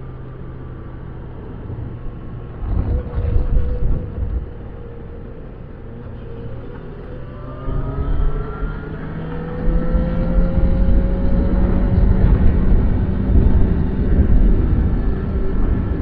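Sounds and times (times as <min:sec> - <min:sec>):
motorcycle engine accelerating: 0:06.2 - 0:16.0.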